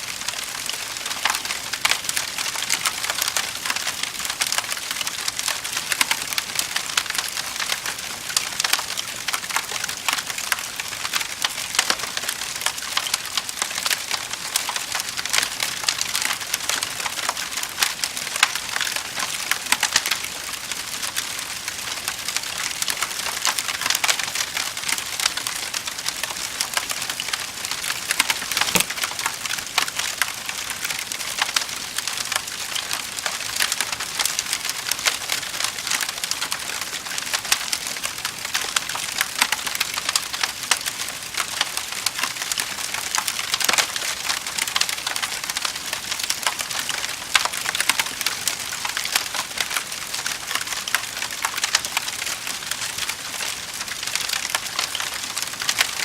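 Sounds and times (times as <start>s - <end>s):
wood fire crackling and popping: 28.2s - 28.9s.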